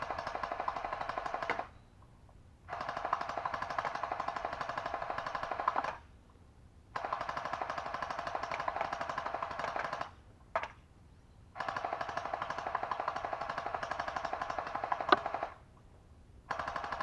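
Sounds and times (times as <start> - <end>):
gel blaster firing full-auto: 2.7 - 6.0, 7.0 - 10.1, 11.6 - 15.6, 16.5 - 17.0.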